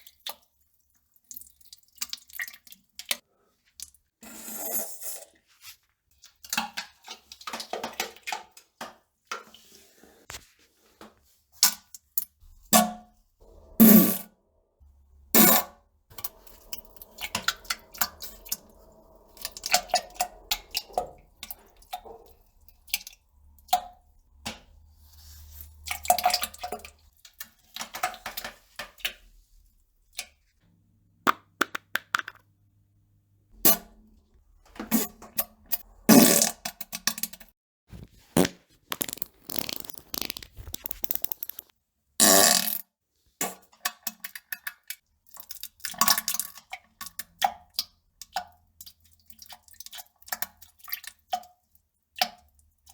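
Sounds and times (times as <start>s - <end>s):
fart sound effects: 38.3s - 42.8s.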